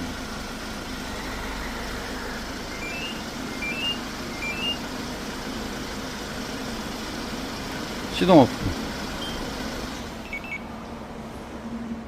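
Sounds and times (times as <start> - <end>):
engine idling: 0.0 - 12.0
car alarm rising beeps: 2.7 - 4.9, 9.2 - 9.5, 10.2 - 10.8.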